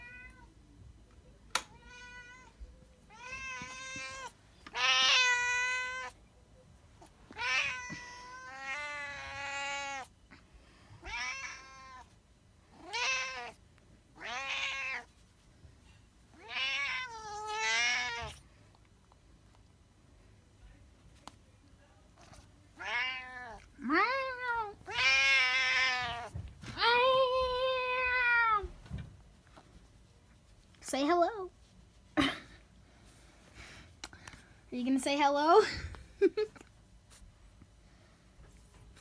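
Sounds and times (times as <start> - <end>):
cat meowing: 0.0 - 0.5, 1.7 - 6.2, 7.3 - 10.1, 11.0 - 12.1, 12.8 - 13.6, 14.2 - 15.1, 16.4 - 18.4, 22.8 - 28.8.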